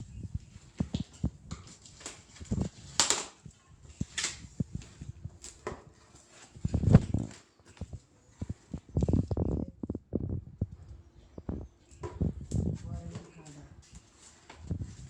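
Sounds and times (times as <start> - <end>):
packaging rustling: 0.5 - 9.2.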